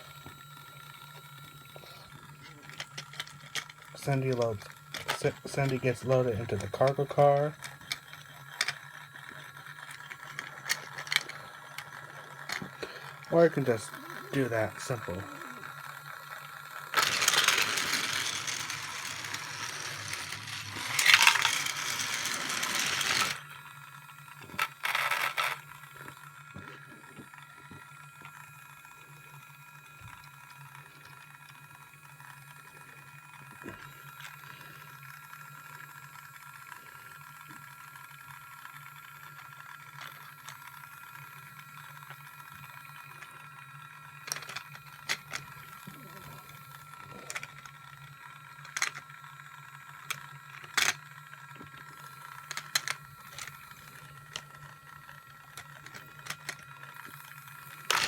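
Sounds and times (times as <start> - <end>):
toy train motor humming: 0.0 - 58.0
plastic rattling and clattering: 2.4 - 15.3, 17.0 - 23.4, 44.3 - 46.0, 47.1 - 47.8, 48.6 - 49.1, 50.1 - 51.7, 52.4 - 54.8, 55.4 - 58.0.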